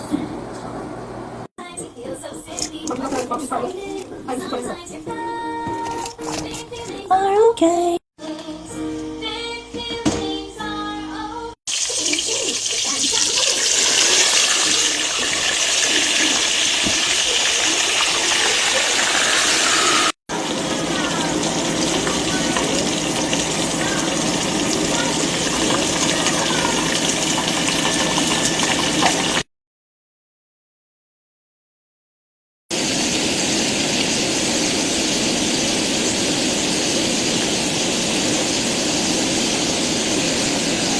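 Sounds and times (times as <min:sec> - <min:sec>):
hot oil sizzling: 0:01.9 - 0:07.1, 0:11.7 - 0:29.5, 0:32.7 - 0:40.9.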